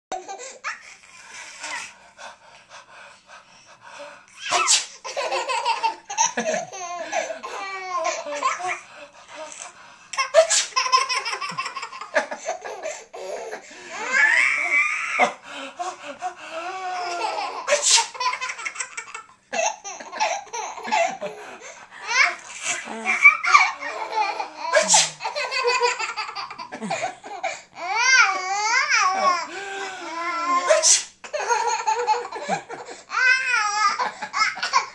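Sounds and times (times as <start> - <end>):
person sneezing: 4.4 - 5.0, 10.4 - 10.8, 17.7 - 18.1, 24.7 - 25.3, 30.6 - 31.2.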